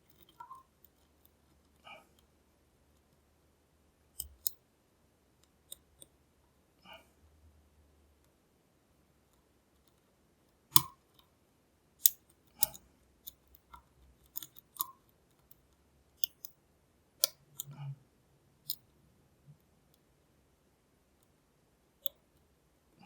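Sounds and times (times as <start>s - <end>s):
lock pick clicking on pins: 4.2s - 4.6s, 10.7s - 11.2s, 12.0s - 15.6s, 16.2s - 16.6s, 17.2s - 17.8s, 18.6s - 18.9s.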